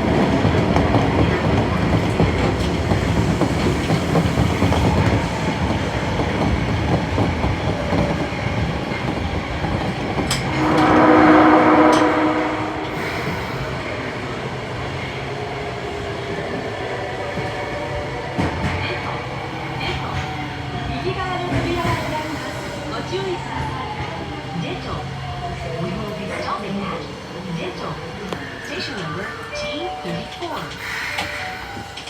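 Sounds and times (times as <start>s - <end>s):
subway train running: 0.0s - 32.0s
rail-joint clacking: 9.0s - 14.0s, 28.3s - 32.0s
train horn: 10.3s - 13.9s.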